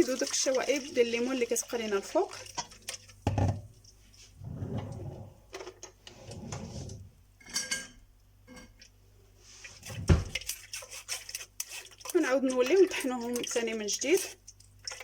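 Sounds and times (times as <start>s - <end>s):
kitchenware handled: 4.4s - 8.7s.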